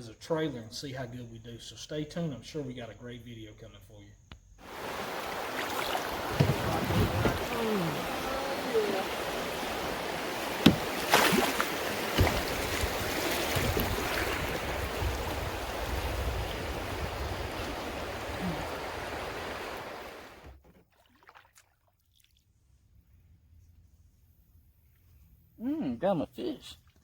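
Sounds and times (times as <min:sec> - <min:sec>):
wind: 0:00.0 - 0:27.0
rushing water: 0:04.6 - 0:20.6
sharp knocks: 0:10.5 - 0:14.0.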